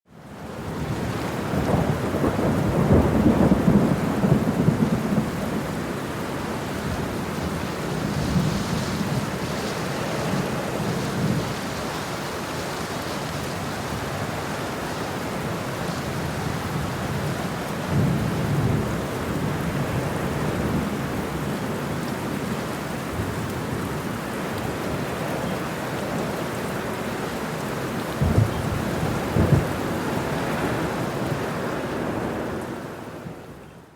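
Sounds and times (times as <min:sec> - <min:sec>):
heavy rain: 0:00.1 - 0:33.9
rolling thunder: 0:00.8 - 0:11.6, 0:28.1 - 0:33.3.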